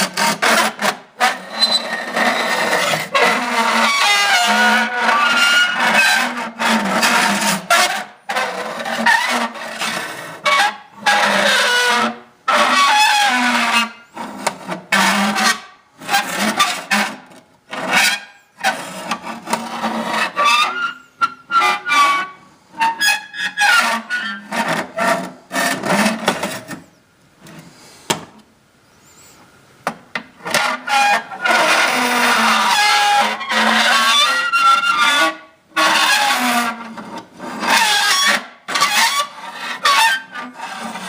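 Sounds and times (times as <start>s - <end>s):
groaning scraping tones: 0.0s - 26.8s.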